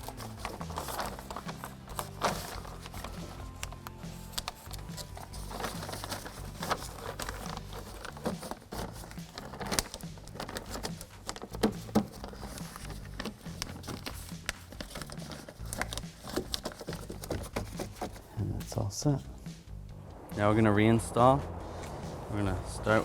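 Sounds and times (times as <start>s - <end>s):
plastic sheet crinkling: 0.0s - 18.3s.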